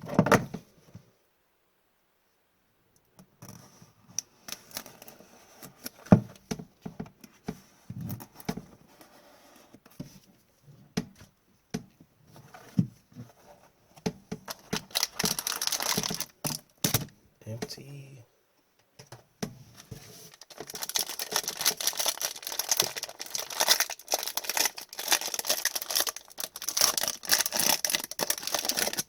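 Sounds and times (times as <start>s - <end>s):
cardboard and wrapper rustling: 14.4s - 17.1s, 19.7s - 29.0s
wrapper tearing: 14.5s - 17.0s, 20.2s - 29.0s.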